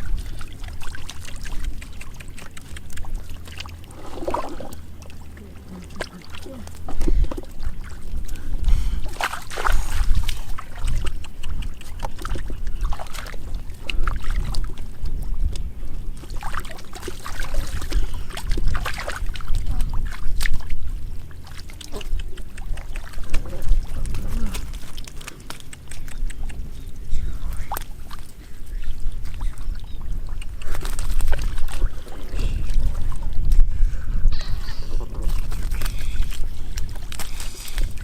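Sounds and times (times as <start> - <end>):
muddy water splashing: 0.0 - 38.0.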